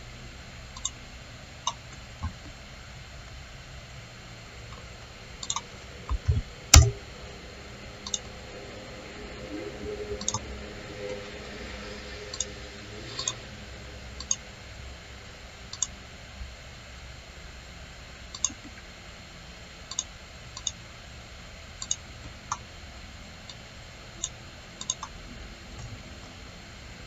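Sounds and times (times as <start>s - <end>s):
computer mouse clicks: 0.8s - 1.0s, 5.4s - 7.0s, 8.0s - 8.3s, 10.2s - 10.4s, 14.2s - 14.4s, 15.7s - 16.0s, 18.3s - 18.7s, 19.9s - 20.8s, 21.8s - 22.6s, 24.2s - 25.2s.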